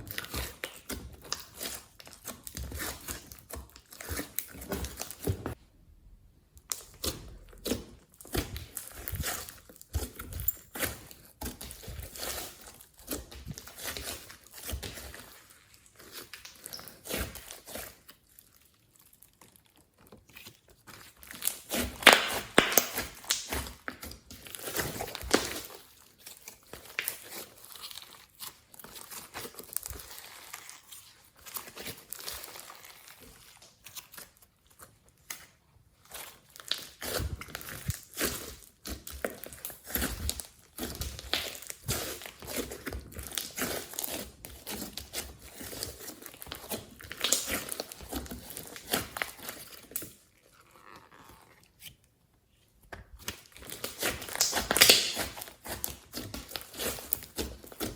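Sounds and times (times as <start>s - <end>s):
slime crackling and popping: 6.6s - 20.4s, 21.0s - 34.4s, 35.1s - 50.3s, 53.1s - 57.9s.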